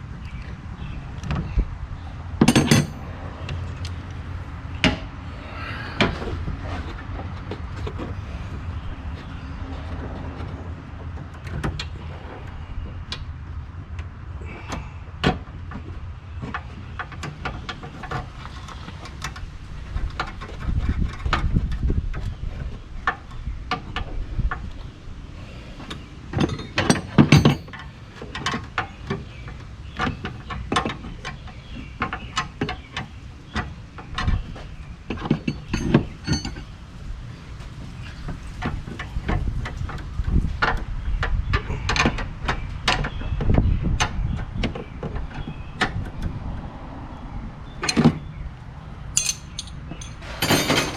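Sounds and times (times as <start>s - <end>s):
hand tools clicking and clinking: 2.4s - 3.0s, 26.4s - 28.5s, 35.1s - 36.7s, 49.2s - 50.9s.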